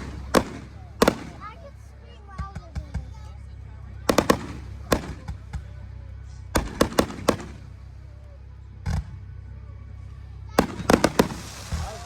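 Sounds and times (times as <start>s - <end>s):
fireworks crackling burst: 0.0s - 1.9s, 10.6s - 12.0s
fireworks popping and banging: 0.0s - 3.4s, 4.0s - 5.9s, 6.6s - 7.9s, 10.5s - 12.0s.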